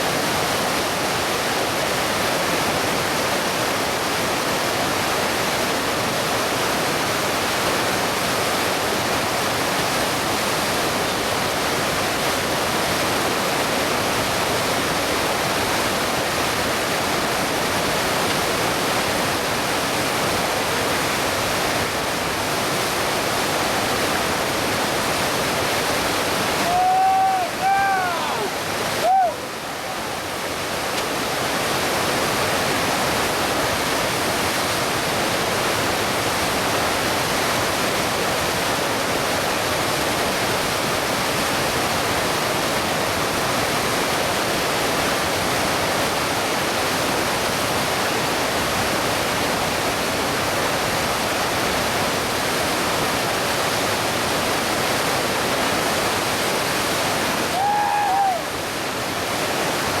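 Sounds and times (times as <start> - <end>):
whitewater rushing: 0.0 - 60.0.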